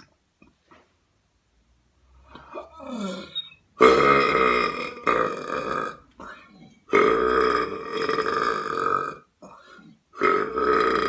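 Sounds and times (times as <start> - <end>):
person belching: 2.4 - 6.3, 6.9 - 11.0.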